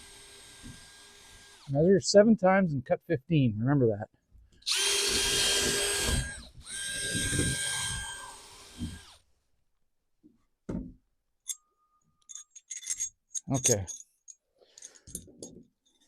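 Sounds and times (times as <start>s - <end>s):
power drill whining: 0.0s - 1.7s, 4.6s - 9.2s.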